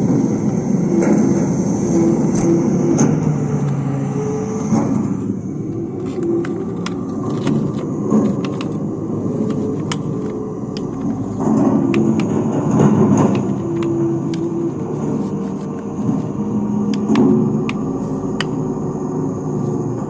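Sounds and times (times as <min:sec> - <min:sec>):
toy electric motors whirring: 0:05.7 - 0:18.8.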